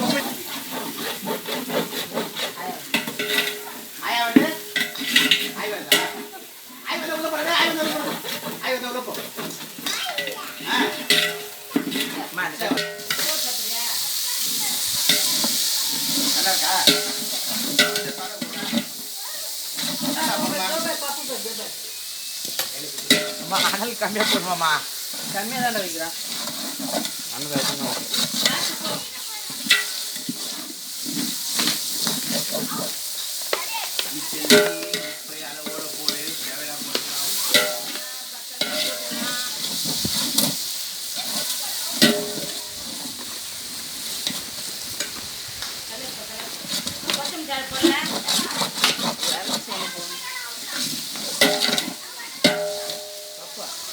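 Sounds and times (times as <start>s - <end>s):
spoon scraping and knocking pot: 0.0s - 6.5s, 7.1s - 21.5s, 22.4s - 45.2s, 46.6s - 53.9s
food sizzling in hot oil: 0.0s - 53.9s.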